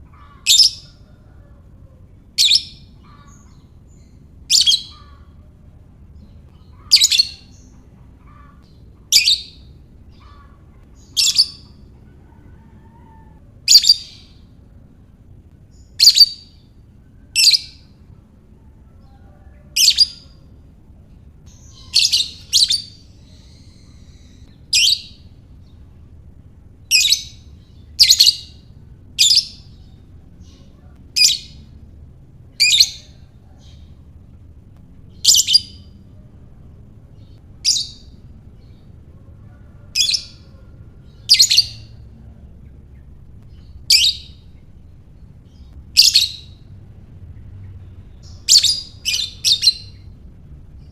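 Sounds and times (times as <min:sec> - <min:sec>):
faint low hum: 0:00.0 - 0:50.9
lovebird shrill chirps: 0:02.4 - 0:05.2, 0:09.1 - 0:11.8, 0:15.7 - 0:16.6.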